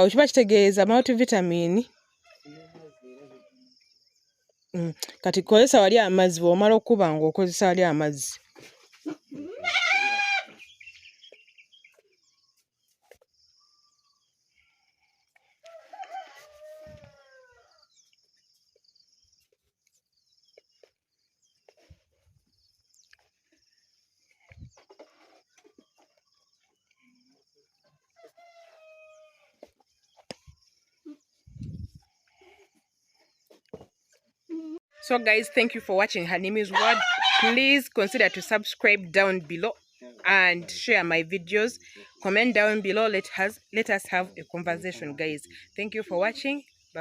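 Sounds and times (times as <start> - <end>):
rooster crowing: 15.6 - 17.8, 36.7 - 37.6.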